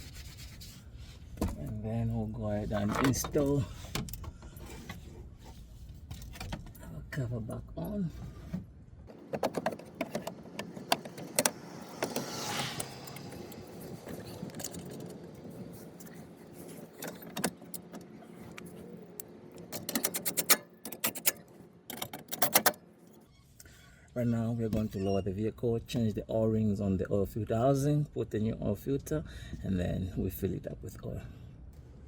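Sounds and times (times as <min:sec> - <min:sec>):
plastic panel clicks and rattles: 0:09.1 - 0:12.2, 0:19.5 - 0:22.8.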